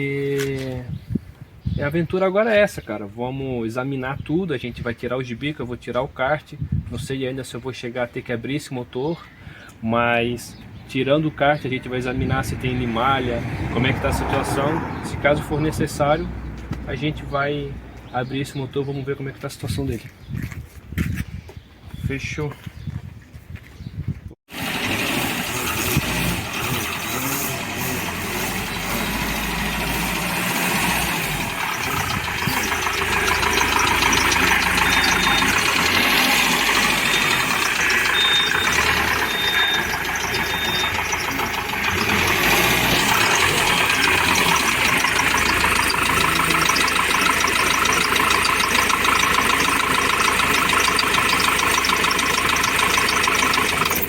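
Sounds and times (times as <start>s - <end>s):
van engine knocking roughly: 31.3s - 54.0s
short high beeps: 37.1s - 41.9s.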